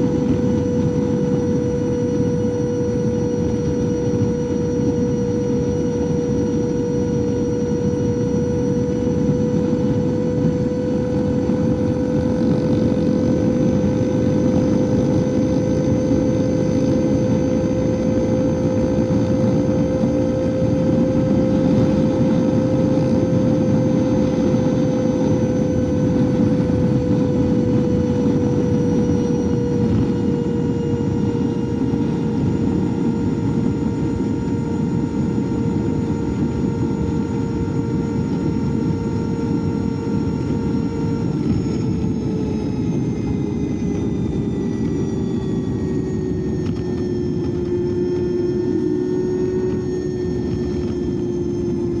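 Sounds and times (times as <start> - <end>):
electric motorcycle motor whining: 0.0 - 52.0.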